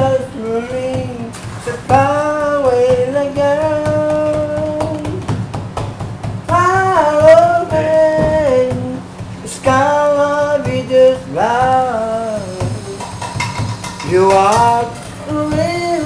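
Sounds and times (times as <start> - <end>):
backing music: 0.0 - 16.0
high voice singing: 6.5 - 16.0.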